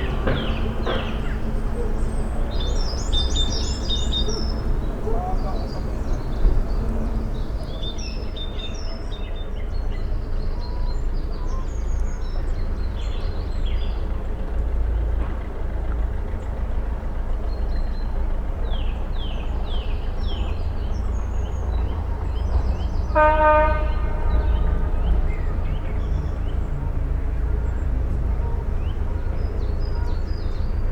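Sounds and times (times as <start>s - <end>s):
steady low rumble: 0.0s - 8.6s
woodland birds calling and singing: 0.0s - 10.0s.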